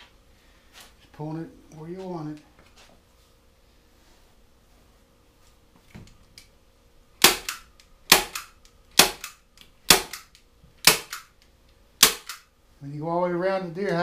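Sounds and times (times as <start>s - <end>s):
staple gun snaps: 7.2s - 11.3s, 12.0s - 12.4s.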